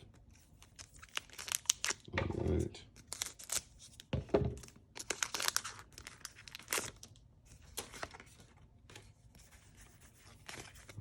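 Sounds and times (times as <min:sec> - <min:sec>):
foil wrapper crinkling and tearing: 0:00.6 - 0:02.1, 0:03.0 - 0:03.9, 0:04.9 - 0:08.2.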